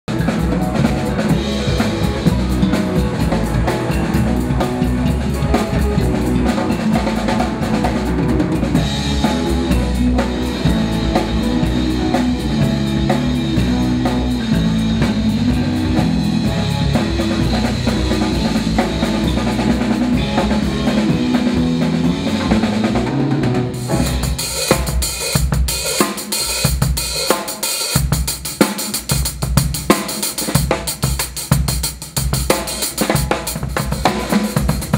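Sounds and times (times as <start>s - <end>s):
drum kit playing: 0.0s - 34.9s
bass line: 0.1s - 25.6s.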